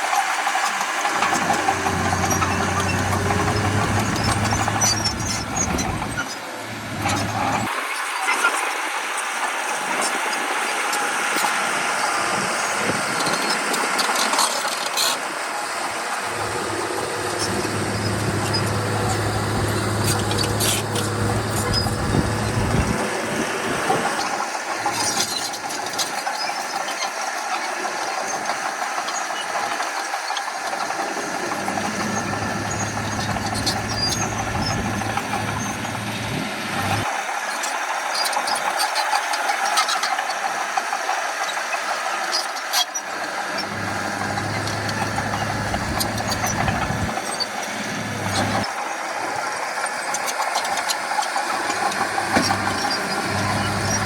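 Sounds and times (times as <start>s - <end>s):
heavy machinery diesel engines: 0.0s - 54.0s
deep engine hum: 1.1s - 7.7s, 16.2s - 24.1s, 31.5s - 37.1s, 43.6s - 47.2s, 47.8s - 48.7s, 51.9s - 54.0s.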